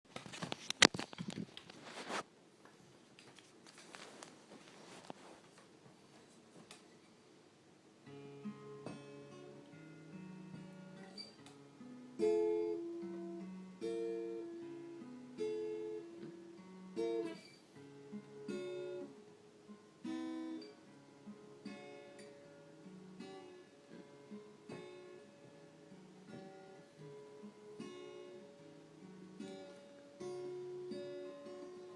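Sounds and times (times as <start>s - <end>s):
acoustic guitar strumming: 8.0s - 31.9s.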